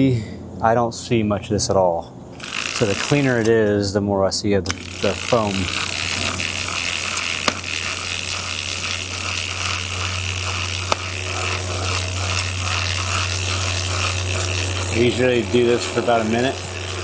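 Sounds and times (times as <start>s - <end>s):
bicycle chain being scrubbed: 2.4s - 3.7s, 4.7s - 17.0s
hub ratchet clicking: 2.4s - 3.8s, 4.6s - 17.0s
low hum: 4.7s - 17.0s
sharp clicks: 8.6s - 12.1s.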